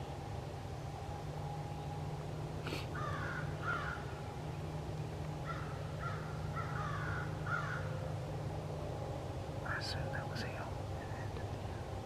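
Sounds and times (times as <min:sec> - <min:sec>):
crows cawing: 0:02.7 - 0:04.1, 0:05.4 - 0:08.0.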